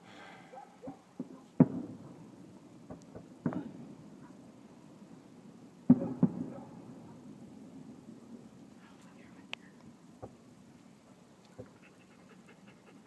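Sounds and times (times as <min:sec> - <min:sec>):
firework shells booming: 0:01.2 - 0:02.1, 0:02.8 - 0:04.1, 0:05.8 - 0:08.0.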